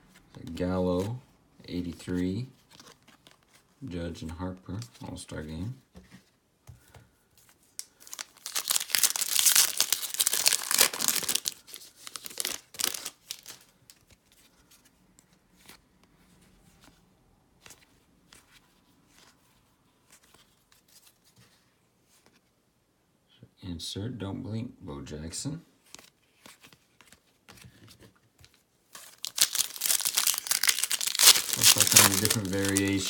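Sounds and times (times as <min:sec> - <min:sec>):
cards rustling: 0:01.8 - 0:05.2, 0:06.8 - 0:15.8, 0:25.8 - 0:33.0
wrapper tearing and crinkling: 0:07.8 - 0:13.6, 0:29.0 - 0:33.0.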